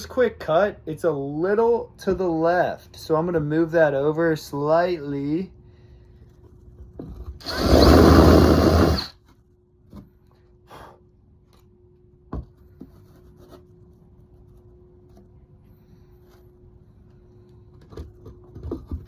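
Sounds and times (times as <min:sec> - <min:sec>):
faint steady hum: 0:00.0 - 0:19.0
power drill with hole saw: 0:07.4 - 0:09.2.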